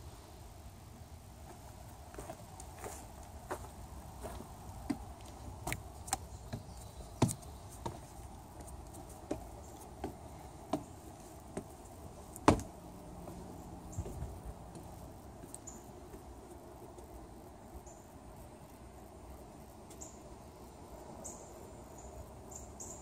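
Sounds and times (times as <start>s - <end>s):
footsteps knocking: 6.5s - 8.1s, 12.4s - 12.7s.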